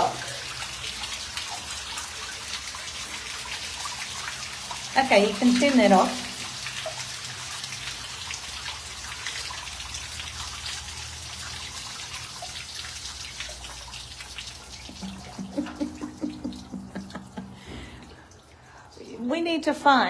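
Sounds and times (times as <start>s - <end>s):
water drips: 0.0s - 19.7s
water splashing down stone: 12.0s - 18.1s.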